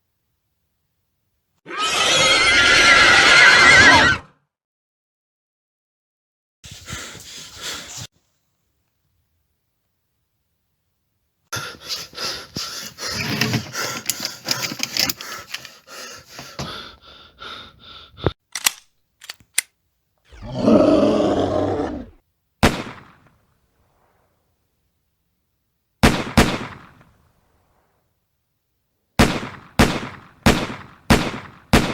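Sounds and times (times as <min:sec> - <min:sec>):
loud rasping cry: 0:01.6 - 0:04.3, 0:20.3 - 0:22.2.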